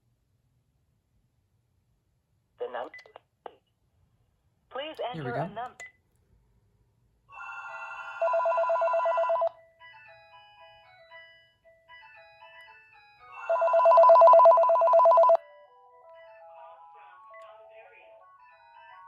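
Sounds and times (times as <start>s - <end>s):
cordless phone warbling ring: 7.4s - 9.6s, 13.4s - 15.4s.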